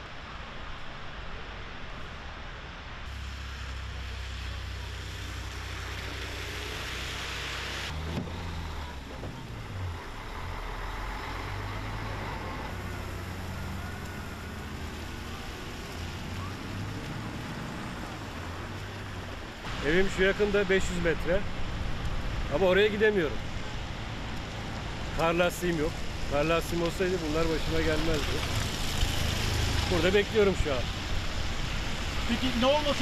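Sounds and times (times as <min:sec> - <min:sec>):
road noise hiss: 0:00.0 - 0:33.0
car engines humming: 0:03.1 - 0:33.0.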